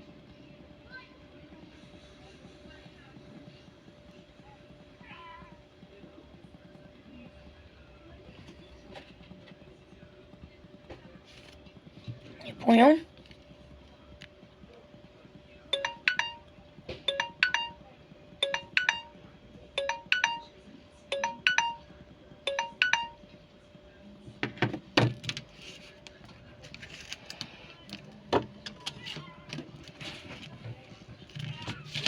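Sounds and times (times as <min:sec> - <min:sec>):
two-note alarm chime: 0:15.8 - 0:16.5, 0:17.1 - 0:17.8, 0:18.4 - 0:19.2, 0:19.8 - 0:20.5, 0:21.1 - 0:21.9, 0:22.5 - 0:23.2.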